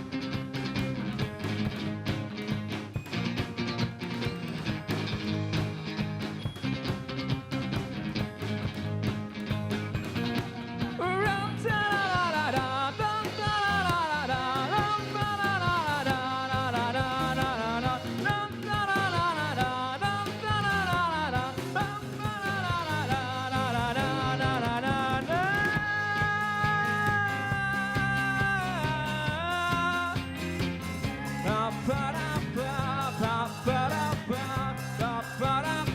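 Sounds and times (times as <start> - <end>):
rock band music: 0.0 - 35.9.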